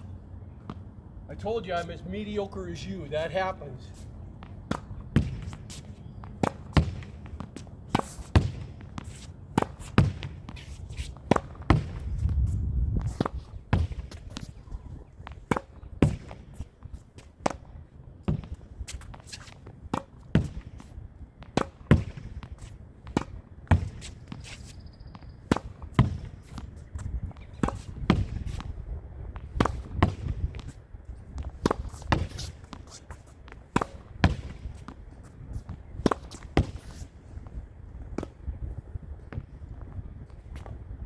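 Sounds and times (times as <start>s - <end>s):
tennis racket striking ball: 4.4s - 12.3s, 18.3s - 20.7s, 21.4s - 24.8s, 25.4s - 28.7s, 31.4s - 37.0s
ball hitting wall and bouncing: 11.2s - 12.1s, 33.5s - 35.0s
wind noise: 11.7s - 17.0s, 25.7s - 32.8s, 34.0s - 41.0s.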